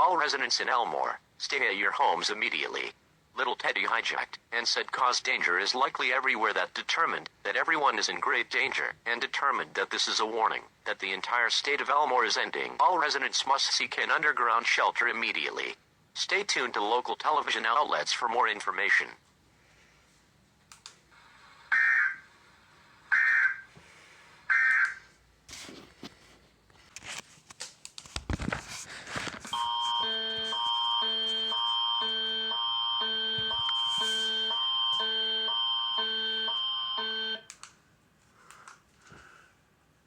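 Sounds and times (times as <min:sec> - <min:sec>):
crackles and static: 0:24.6 - 0:32.5.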